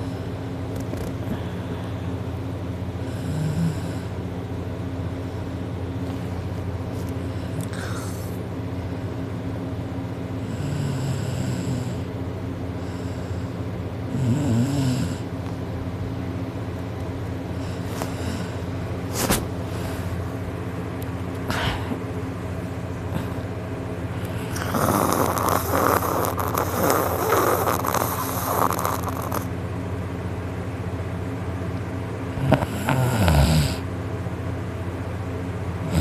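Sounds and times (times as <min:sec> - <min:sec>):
background hum: 0:00.0 - 0:36.0
man snoring heavily: 0:03.0 - 0:04.2, 0:07.3 - 0:08.4, 0:10.4 - 0:12.2, 0:12.8 - 0:15.3, 0:17.5 - 0:18.7, 0:24.2 - 0:29.5, 0:32.3 - 0:33.9, 0:35.8 - 0:36.0.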